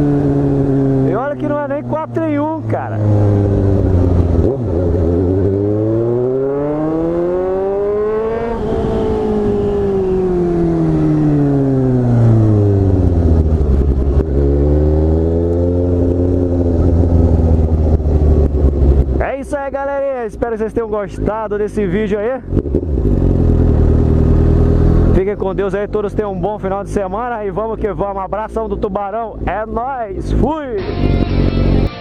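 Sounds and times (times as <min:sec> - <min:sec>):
motorcycle engine revving: 0:00.0 - 0:19.3, 0:20.8 - 0:27.3, 0:30.4 - 0:32.0.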